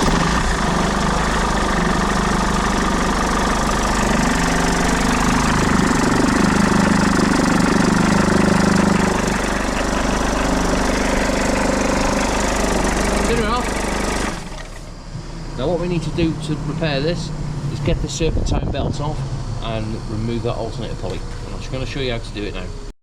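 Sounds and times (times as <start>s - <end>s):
belt tensioner flapping: 0.0s - 14.9s
diesel engine idling: 0.0s - 22.9s.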